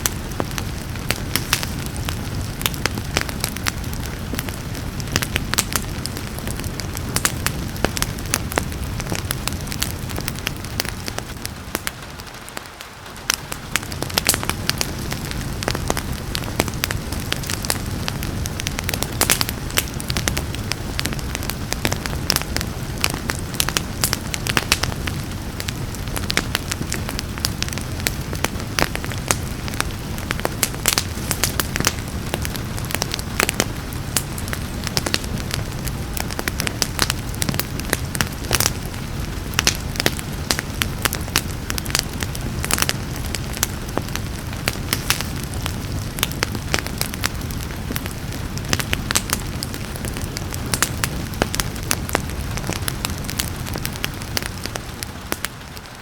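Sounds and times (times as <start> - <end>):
rain hissing: 0.0 - 56.0
wood fire crackling: 0.0 - 56.0.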